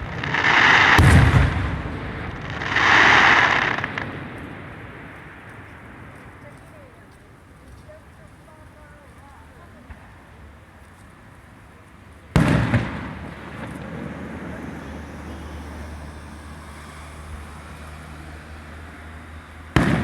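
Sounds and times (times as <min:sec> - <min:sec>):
fireworks shell boom: 0:00.0 - 0:04.2
rumble and crackle: 0:00.0 - 0:14.6.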